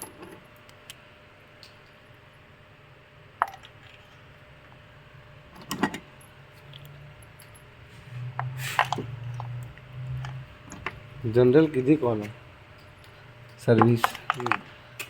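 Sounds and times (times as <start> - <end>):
low hum: 1.8 - 15.0.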